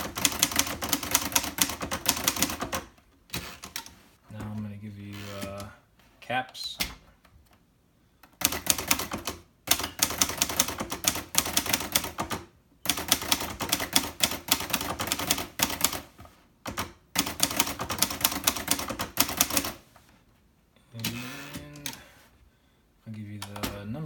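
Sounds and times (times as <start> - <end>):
manual typewriter typing: 0.0 - 4.0, 5.1 - 5.7, 8.4 - 19.9.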